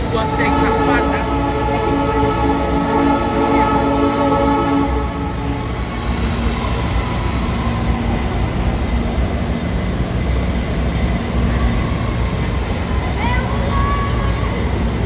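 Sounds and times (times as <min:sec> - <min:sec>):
train rumble: 0:00.0 - 0:15.0.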